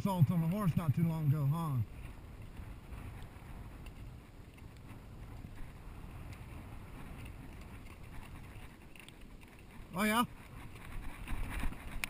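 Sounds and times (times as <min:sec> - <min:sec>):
wind buffeting microphone: 0:00.0 - 0:12.0
faint clicks: 0:02.0 - 0:09.8.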